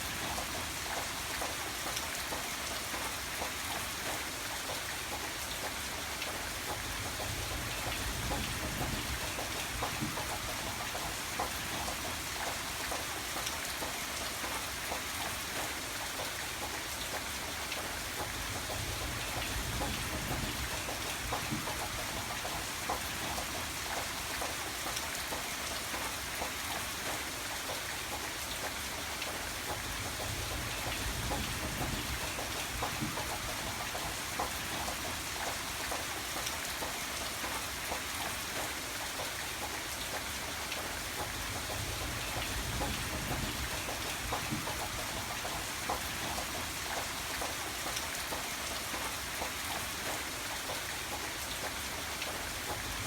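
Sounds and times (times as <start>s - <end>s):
raindrops ticking on surface: 0.0s - 53.0s
steady rain falling: 0.0s - 53.0s.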